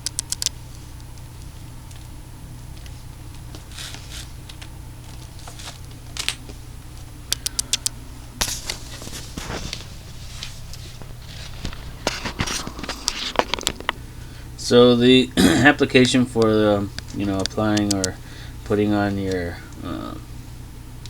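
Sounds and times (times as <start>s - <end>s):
steady low hum: 0.0s - 21.0s
short rustles: 8.4s - 13.9s
handling clicks and taps: 16.0s - 18.2s.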